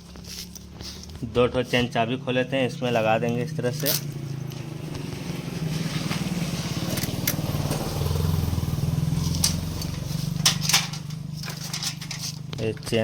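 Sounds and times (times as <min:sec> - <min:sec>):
motorcycle engine running: 0:02.6 - 0:13.0
bicycle chain clicking: 0:06.8 - 0:12.7.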